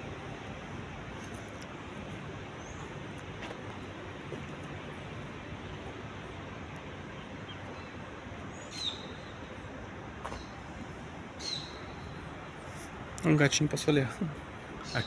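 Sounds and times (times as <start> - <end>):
city traffic hum: 0.0 - 15.0
bird chirp: 7.1 - 9.7, 11.4 - 12.3.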